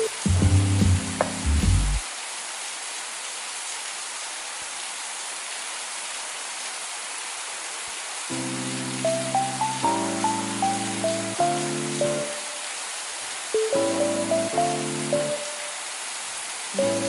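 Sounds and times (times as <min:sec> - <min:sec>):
soft music chords: 0:00.0 - 0:02.0, 0:08.3 - 0:12.5, 0:13.6 - 0:15.5
steady rain: 0:00.0 - 0:17.0.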